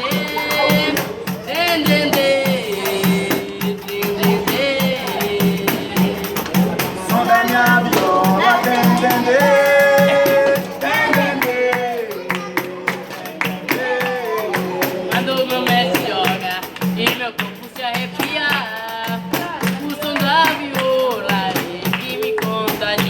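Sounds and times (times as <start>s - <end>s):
rattle shaking: 0.0s - 23.0s
steady percussion beat: 0.0s - 23.0s.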